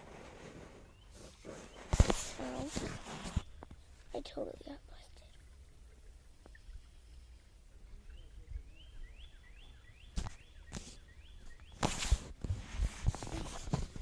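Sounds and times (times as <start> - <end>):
loud rustle: 11.8 - 14.0.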